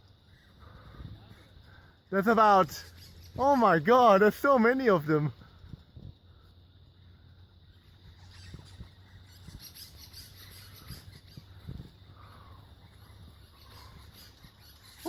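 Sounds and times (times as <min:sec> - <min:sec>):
parrots chirping: 0:08.1 - 0:11.6, 0:12.9 - 0:15.0.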